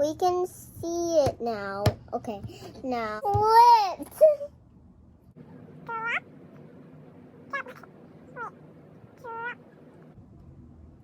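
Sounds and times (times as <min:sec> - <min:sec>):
high meow-like calls: 0:07.5 - 0:08.6.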